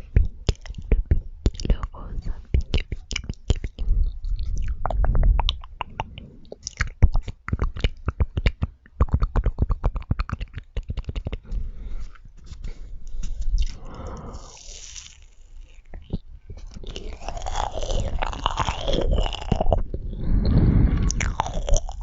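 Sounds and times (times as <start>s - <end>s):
wet chewing mouth clicks: 0.0s - 1.9s, 2.5s - 11.6s, 13.5s - 22.0s
breathy noise: 11.4s - 22.0s.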